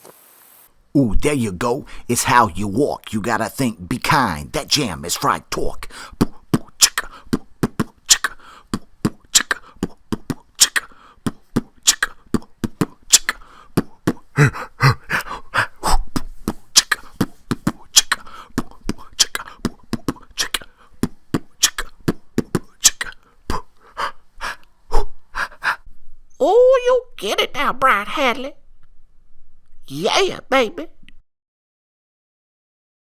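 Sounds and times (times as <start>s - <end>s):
beatboxing: 1.0s - 23.8s.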